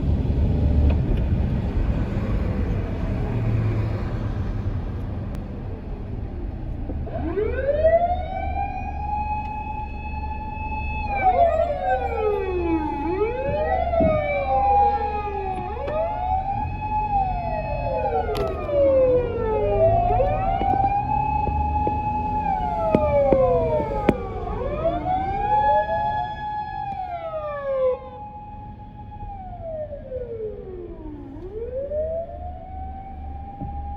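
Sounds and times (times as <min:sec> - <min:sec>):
low traffic rumble: 0:00.0 - 0:33.9
fire engine siren wailing: 0:06.8 - 0:33.9.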